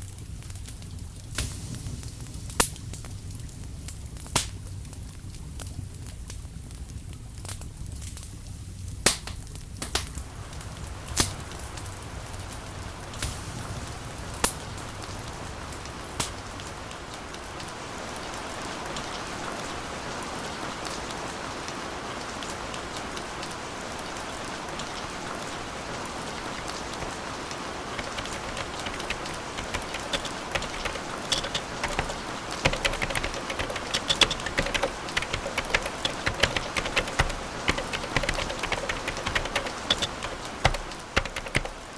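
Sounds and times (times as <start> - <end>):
keyboard typing clicks: 28.0 - 41.9.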